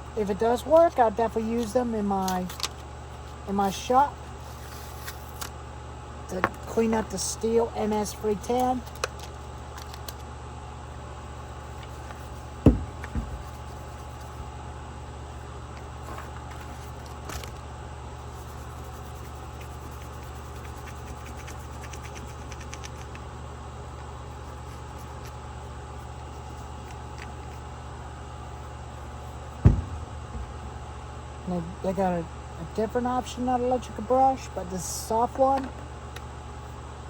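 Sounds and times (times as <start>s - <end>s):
low mechanical hum: 0.0s - 37.0s
short knocks: 12.6s - 13.6s, 29.6s - 31.0s.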